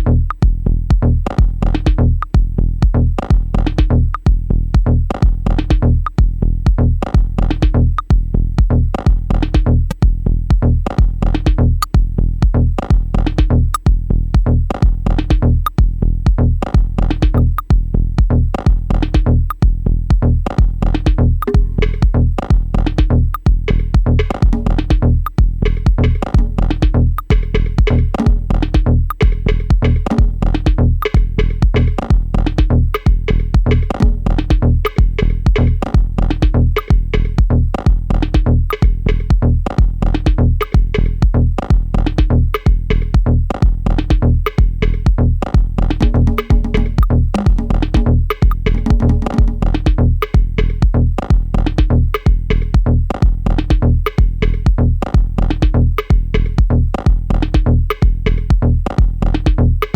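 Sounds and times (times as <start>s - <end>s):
deep held bass: 0.0s - 59.9s
kick drum: 0.0s - 59.9s
synth chords: 20.2s - 51.1s.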